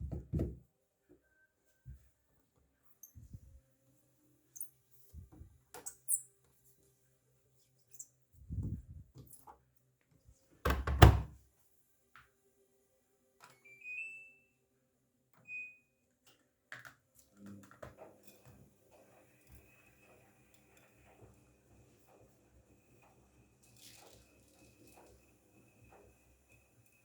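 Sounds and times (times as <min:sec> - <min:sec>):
washing machine thuds: 0:00.0 - 0:00.6, 0:10.6 - 0:11.4.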